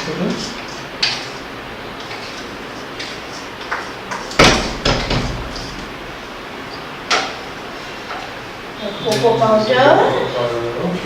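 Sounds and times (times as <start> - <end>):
sharp knock: 4.3 - 5.9
heavy thud: 4.3 - 6.3.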